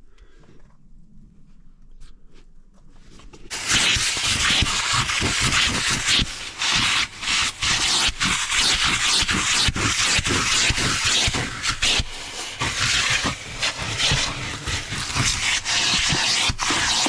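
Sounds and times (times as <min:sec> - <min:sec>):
loud rushing hiss: 0:03.5 - 0:17.0.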